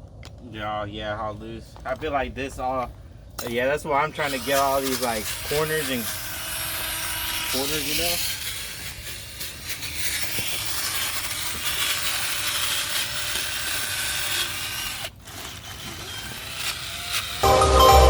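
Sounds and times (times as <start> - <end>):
sanding metal scraping: 4.0 - 17.5.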